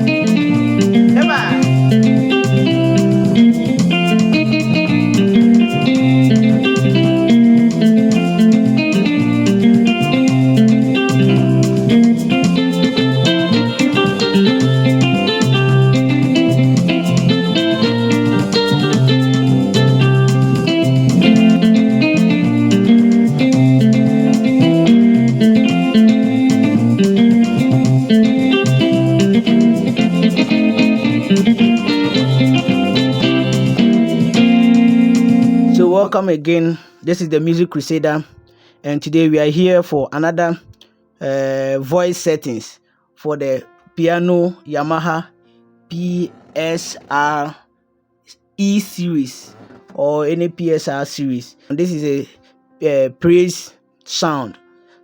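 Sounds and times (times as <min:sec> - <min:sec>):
bass line: 0:00.0 - 0:35.9
light steady beat: 0:00.0 - 0:36.2
keyboard clean guitar melody: 0:00.0 - 0:42.7, 0:43.3 - 0:47.5.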